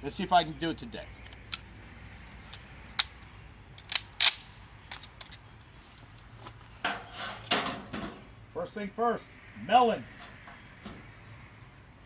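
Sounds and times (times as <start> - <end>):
rifle mechanical clicks: 3.8 - 5.4.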